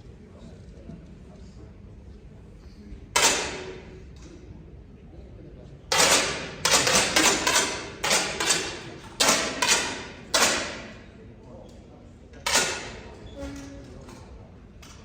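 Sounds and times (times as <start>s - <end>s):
air rifle shots: 3.2s - 3.9s, 5.9s - 11.1s.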